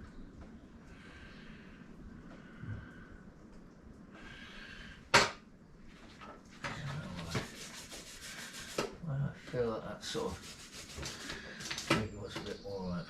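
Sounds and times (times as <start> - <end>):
quick scraping strokes: 6.9 - 11.8.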